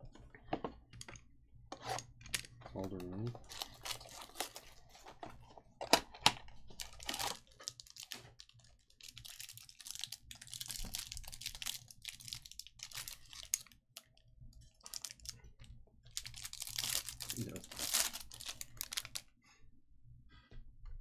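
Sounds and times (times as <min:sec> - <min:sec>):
cards clicking and rustling: 0:16.2 - 0:19.2.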